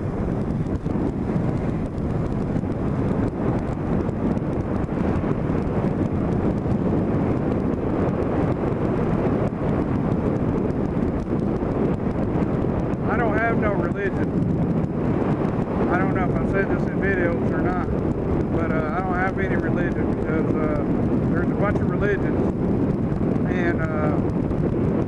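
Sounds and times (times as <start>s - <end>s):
motorcycle engine and road noise: 0.0s - 25.0s
wind buffeting microphone: 0.0s - 25.0s.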